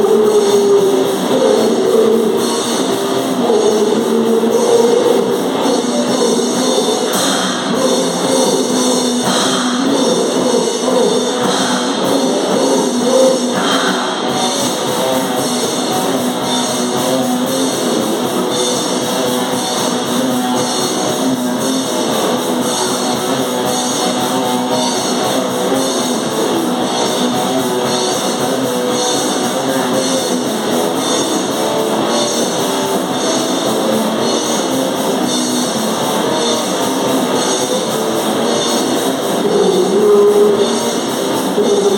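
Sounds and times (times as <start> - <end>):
distorted electric guitars: 0.0 - 41.9
drums: 0.0 - 41.9.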